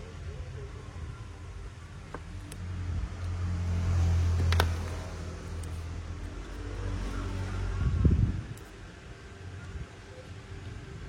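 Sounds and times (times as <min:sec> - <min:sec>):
motor vehicle passing: 0:02.4 - 0:08.5.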